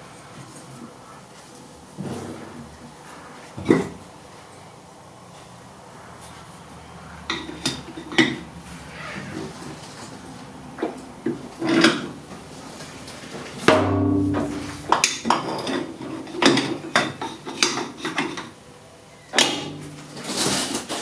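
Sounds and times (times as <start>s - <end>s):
ringing metal clank: 13.7s - 15.0s.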